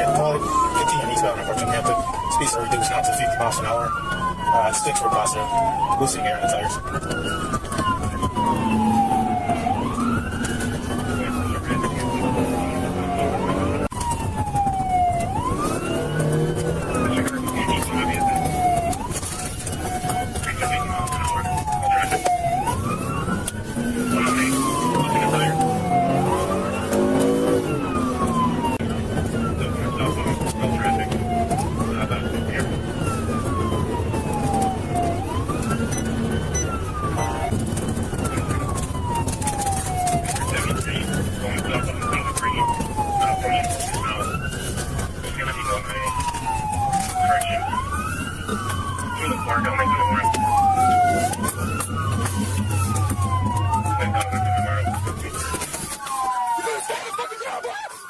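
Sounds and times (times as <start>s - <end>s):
buzzy siren tone: 0.0s - 44.7s
car engine: 0.0s - 58.0s
police siren wailing: 0.0s - 58.0s
road noise: 0.0s - 58.0s.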